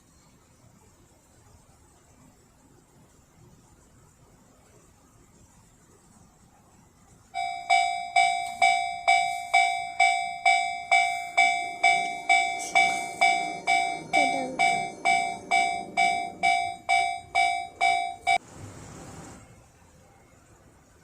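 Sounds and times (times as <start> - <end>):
level-crossing alarm ringing: 7.4 - 18.4.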